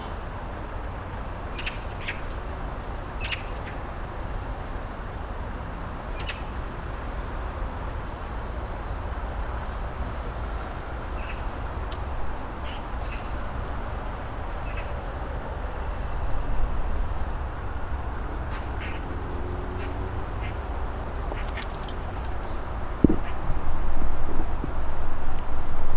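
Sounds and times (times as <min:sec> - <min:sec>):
birds chirping: 0:00.0 - 0:25.5
steady low rumble: 0:07.6 - 0:25.9.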